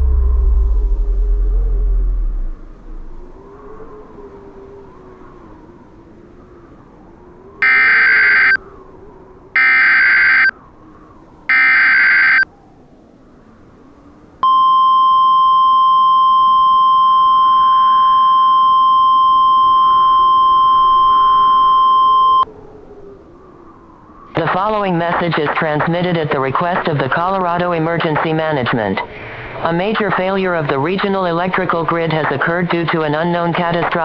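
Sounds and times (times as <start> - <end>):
steady single-pitch attention tone: 14.4 - 22.5.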